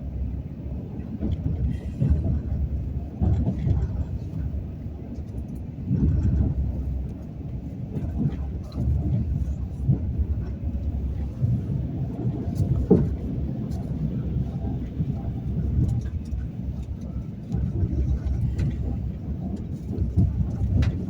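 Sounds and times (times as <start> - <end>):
moving train rumble: 0.0 - 21.0.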